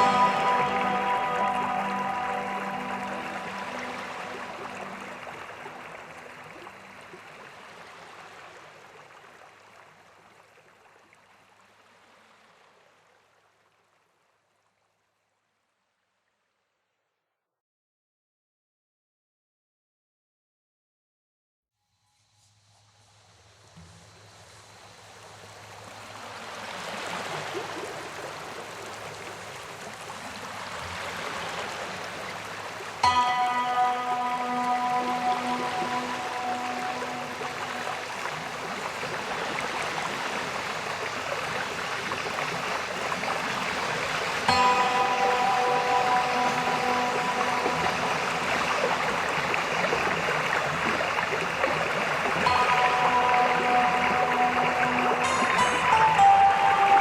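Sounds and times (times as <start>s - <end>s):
soft background music: 0.0s - 7.8s, 30.2s - 57.0s
waterfall rushing: 0.0s - 8.6s, 24.1s - 57.0s.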